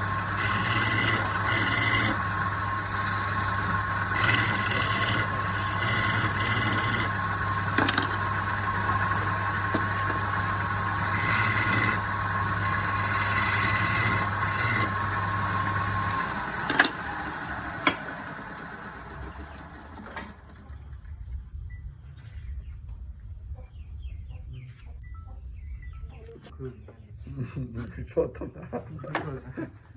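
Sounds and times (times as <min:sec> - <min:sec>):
tool rasping against wood: 0:00.0 - 0:02.2, 0:02.8 - 0:07.2, 0:11.0 - 0:15.0
power tool motor hum: 0:00.0 - 0:10.1, 0:10.8 - 0:16.3.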